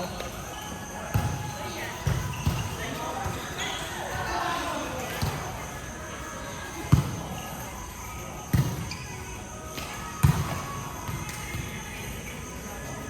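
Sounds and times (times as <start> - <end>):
hall background noise: 0.0 - 13.0.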